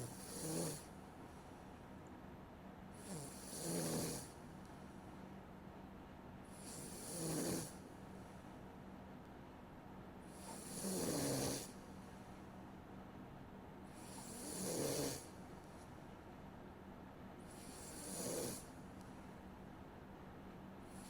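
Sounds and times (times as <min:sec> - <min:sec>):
person snoring: 0:00.0 - 0:00.9, 0:03.0 - 0:04.3, 0:06.6 - 0:07.8, 0:10.4 - 0:11.7, 0:14.0 - 0:15.3, 0:17.6 - 0:18.7.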